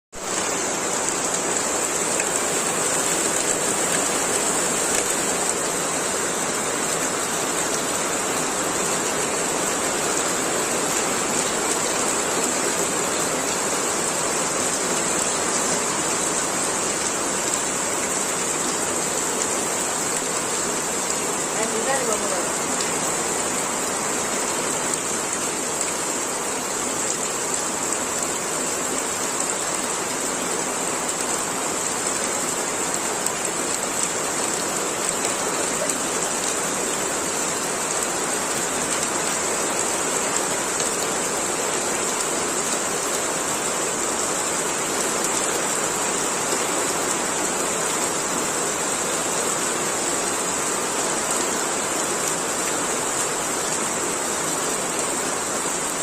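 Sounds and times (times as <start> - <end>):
steady rain falling: 0.1 - 56.0.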